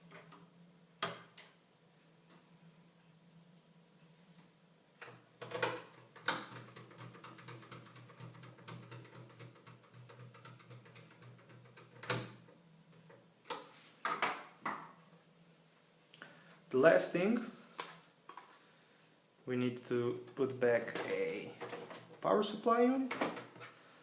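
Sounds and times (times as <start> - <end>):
plastic parts clicking and knocking: 5.0 - 14.8, 20.2 - 22.2, 23.1 - 23.7.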